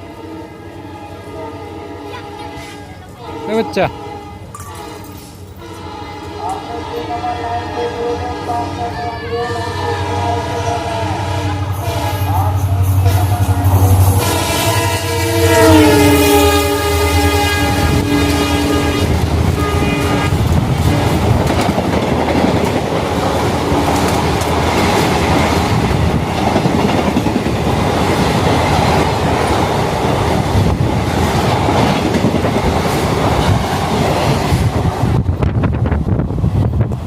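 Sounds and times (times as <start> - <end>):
locomotive horn blast: 0.0 - 21.2
train wheels rushing on rails: 0.0 - 37.0.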